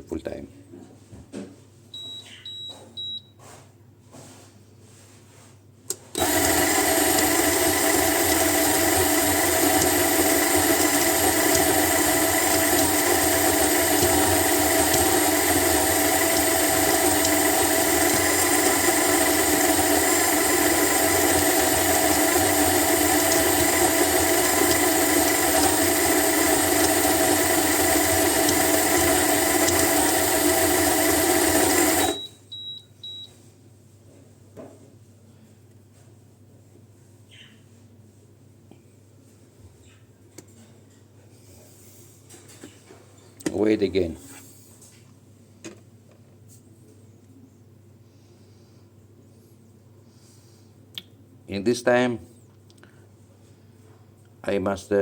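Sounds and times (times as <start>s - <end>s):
coffee grinder motor grinding: 6.1s - 32.2s.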